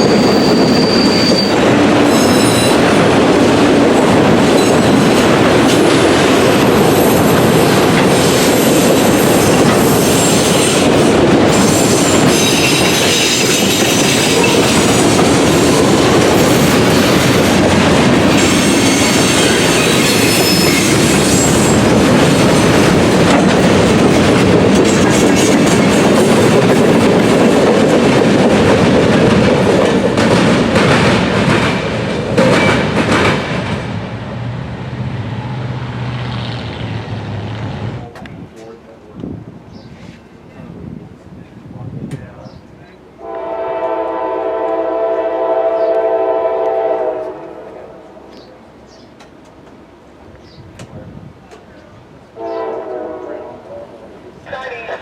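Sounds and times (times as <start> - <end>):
wheel squeal: 0.0 - 2.8, 18.4 - 21.8
train wheels rumbling on rail: 0.0 - 55.0
clacking at rail joints: 7.3 - 33.9, 48.3 - 51.9.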